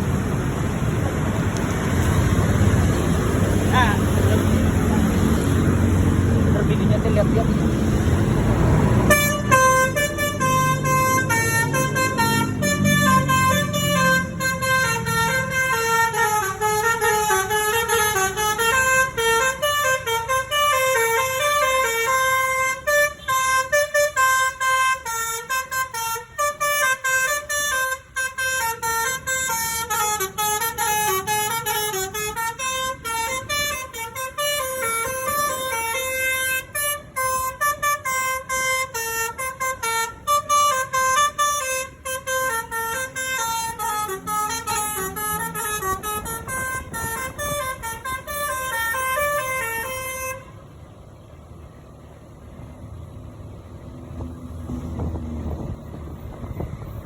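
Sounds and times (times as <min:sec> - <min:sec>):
low engine rumble: 0:00.0 - 0:57.0
multi-tone bus horn melody: 0:08.8 - 0:51.0.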